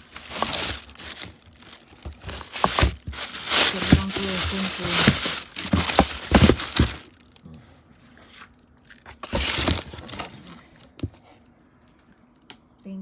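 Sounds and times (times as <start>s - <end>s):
food packaging crinkling: 0.0s - 7.4s, 8.4s - 10.7s.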